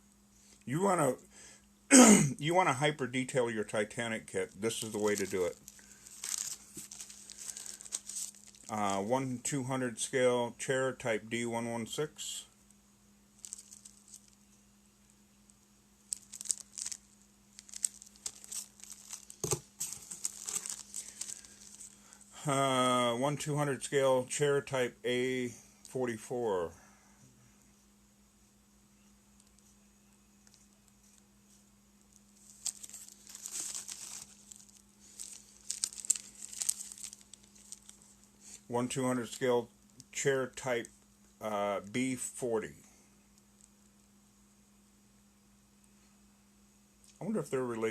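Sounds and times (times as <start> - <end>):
plastic bags crinkling: 4.4 - 8.7, 13.4 - 14.4, 16.1 - 22.2, 32.4 - 38.6.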